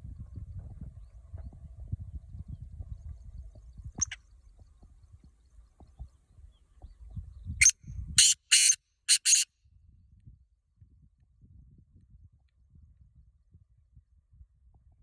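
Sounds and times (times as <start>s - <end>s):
bird calling harsh phrase: 8.2s - 9.4s.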